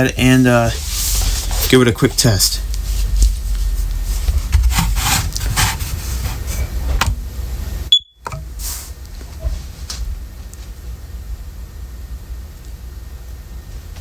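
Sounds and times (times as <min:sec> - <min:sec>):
smoke alarm high-pitched beep: 0:07.9 - 0:08.2.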